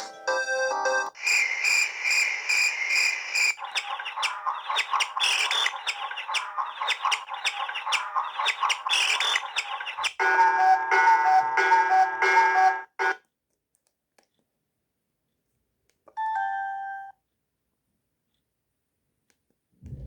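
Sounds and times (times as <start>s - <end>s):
melodic ringtone: 0.0s - 1.2s
ringtone bird chirps: 0.3s - 12.8s.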